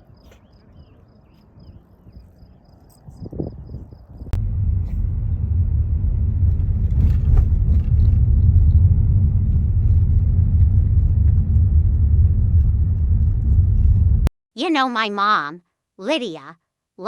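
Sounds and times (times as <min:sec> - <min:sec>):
car road and engine rumble: 0:04.1 - 0:14.3.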